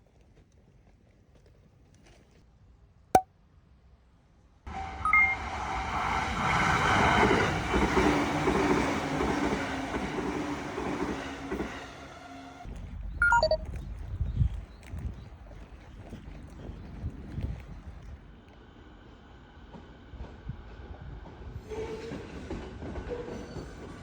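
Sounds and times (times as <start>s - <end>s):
train rolling rail noise: 4.7s - 13.1s, 16.6s - 24.0s.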